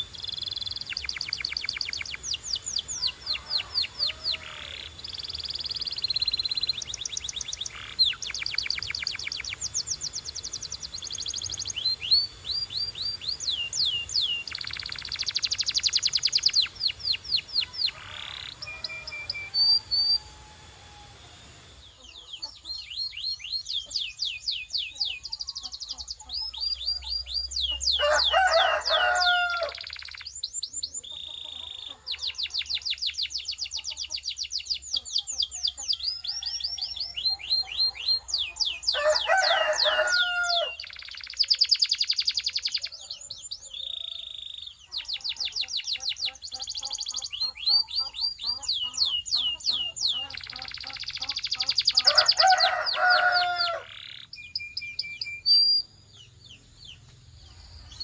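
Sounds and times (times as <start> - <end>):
canary singing: 0.0 - 57.1.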